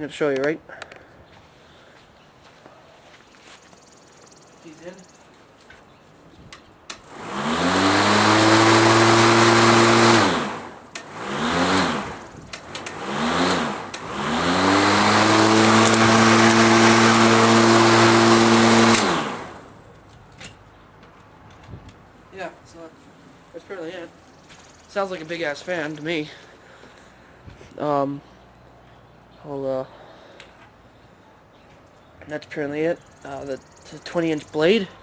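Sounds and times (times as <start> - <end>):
electric lawn mower whining: 6.9 - 19.8.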